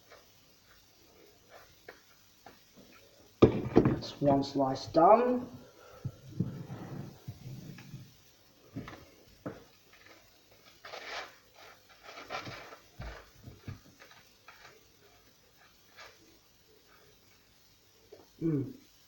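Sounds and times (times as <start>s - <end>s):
butter knife scraping toast: 10.0s - 12.8s.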